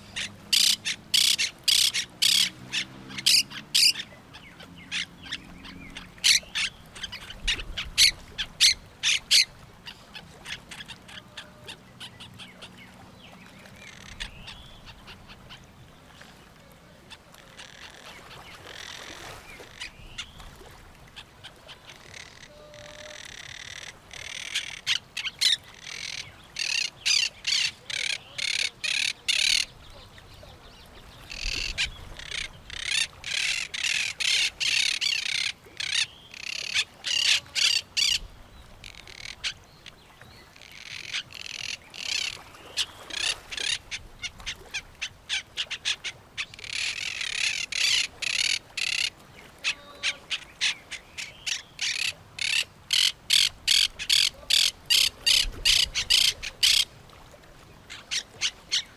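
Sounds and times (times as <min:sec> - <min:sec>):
parrots calling harshly: 0:00.2 - 0:04.0, 0:22.1 - 0:29.7, 0:45.3 - 0:56.8.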